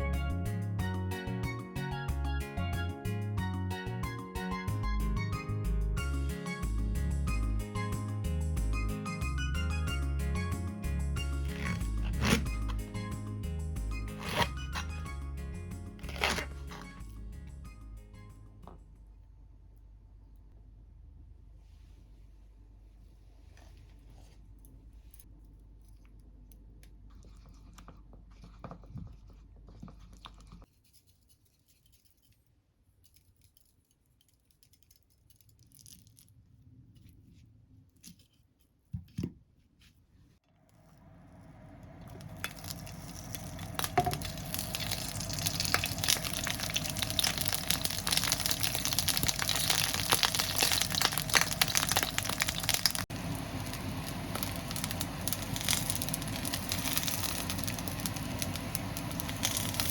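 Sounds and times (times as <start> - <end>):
frying pan sizzling: 11.2 - 12.8, 42.0 - 59.9.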